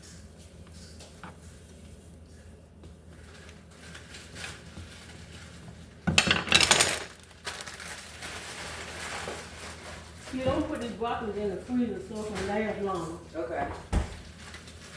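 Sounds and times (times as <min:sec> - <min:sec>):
kitchenware clanking and rattling: 0:06.1 - 0:07.8.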